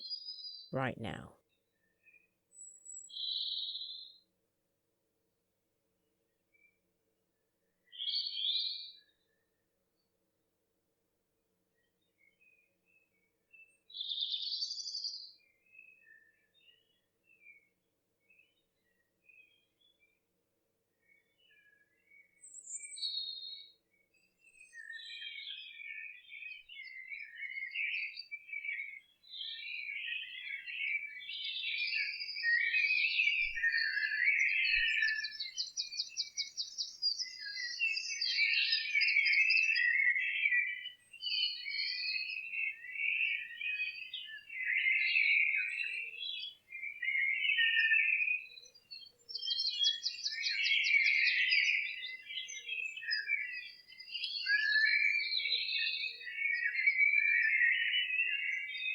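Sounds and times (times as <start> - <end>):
songbirds singing: 24.5 - 58.9.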